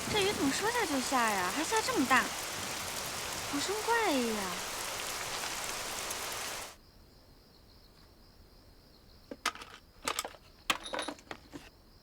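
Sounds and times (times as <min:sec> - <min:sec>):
heavy rain pouring: 0:00.0 - 0:06.8.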